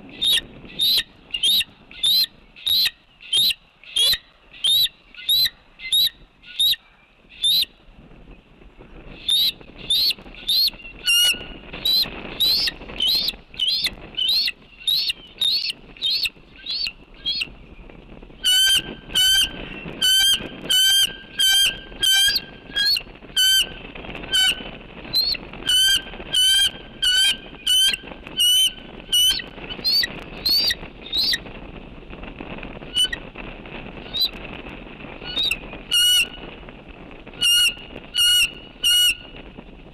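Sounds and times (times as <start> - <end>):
eagle piping calls: 0.1 - 7.7, 9.2 - 17.6, 18.4 - 31.4, 32.9 - 33.2, 35.2 - 36.4, 37.4 - 39.3.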